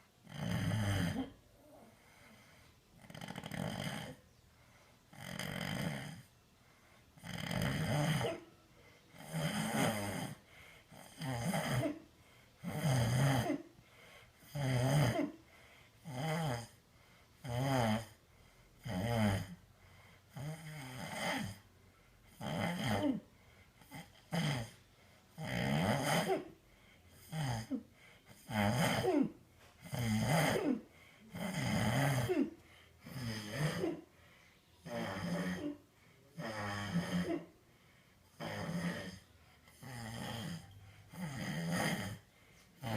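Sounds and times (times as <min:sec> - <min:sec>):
man snoring: 0:00.2 - 0:01.4, 0:03.0 - 0:04.2, 0:05.1 - 0:06.3, 0:07.2 - 0:08.4, 0:09.1 - 0:12.0, 0:12.6 - 0:13.7, 0:14.4 - 0:15.4, 0:16.0 - 0:16.8, 0:17.4 - 0:18.2, 0:18.8 - 0:19.6, 0:20.3 - 0:21.6, 0:22.3 - 0:26.5, 0:27.1 - 0:34.1, 0:34.8 - 0:37.5, 0:38.3 - 0:42.9.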